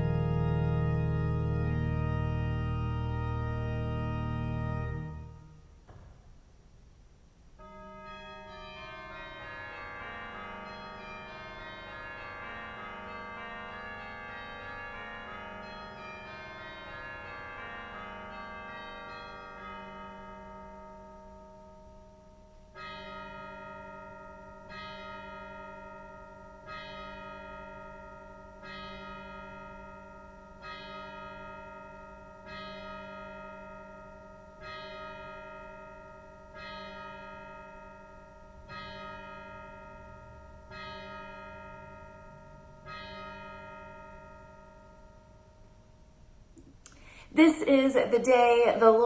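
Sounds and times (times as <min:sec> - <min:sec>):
held chord: 0:00.0 - 0:05.7
church bell tolling: 0:00.0 - 0:06.1, 0:07.6 - 0:46.5.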